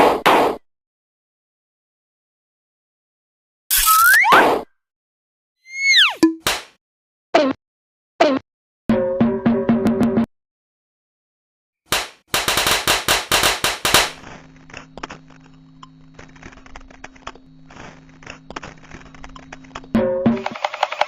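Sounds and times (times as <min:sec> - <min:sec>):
rapid sharp cracks: 0:11.9 - 0:14.2.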